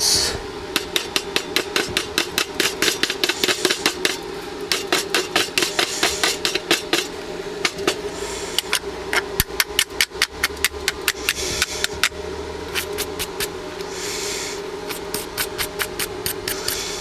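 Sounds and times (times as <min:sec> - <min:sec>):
steady low hum: 0:00.0 - 0:17.0
chipping hammer tapping on metal: 0:00.8 - 0:08.0.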